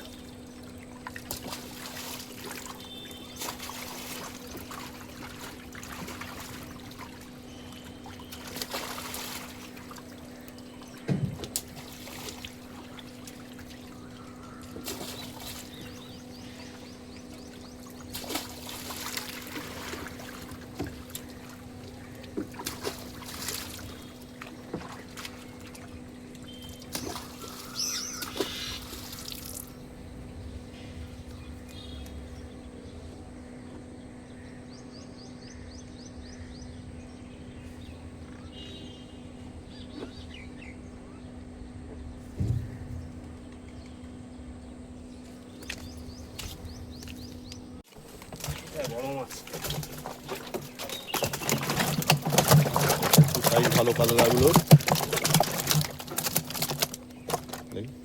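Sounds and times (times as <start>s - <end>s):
water pouring and splashing: 0.0s - 29.9s, 47.8s - 58.0s
steady low hum: 0.0s - 58.0s.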